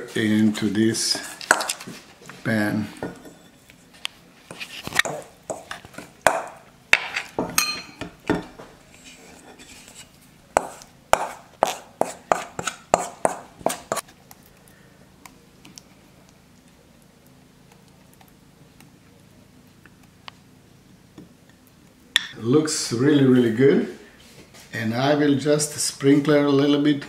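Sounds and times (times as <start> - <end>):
utensil scraping mixing bowl: 8.8 - 14.1.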